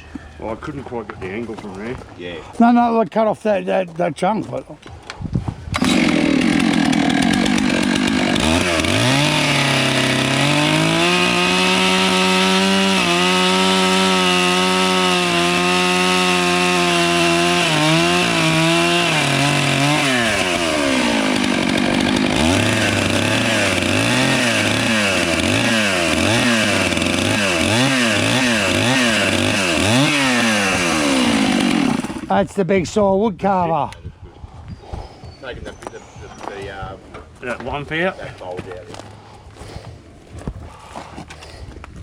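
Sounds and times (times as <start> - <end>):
chainsaw cutting a log: 5.7 - 32.4.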